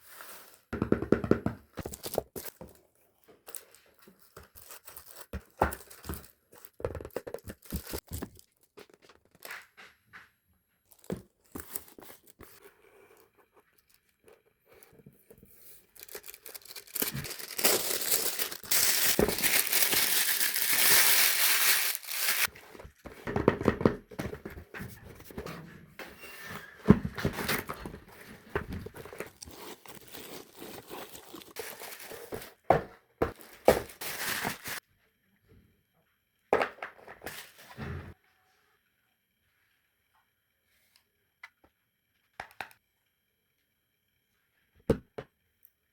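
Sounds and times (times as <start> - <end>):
loud ripping noise: 16.3 - 22.5.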